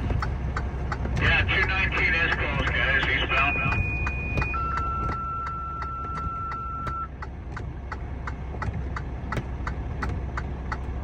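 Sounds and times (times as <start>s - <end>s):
vehicle engine idling: 0.0s - 11.0s
electronic beep tone: 3.2s - 7.1s.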